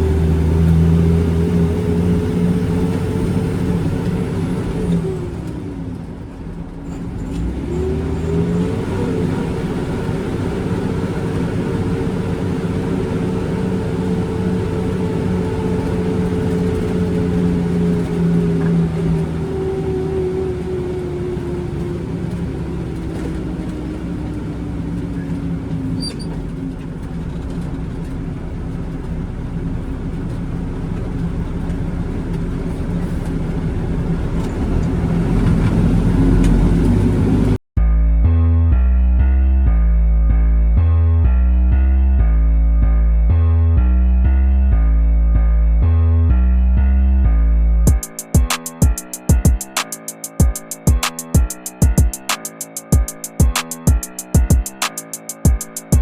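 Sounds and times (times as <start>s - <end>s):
truck diesel engine pulling: 0.0s - 37.6s.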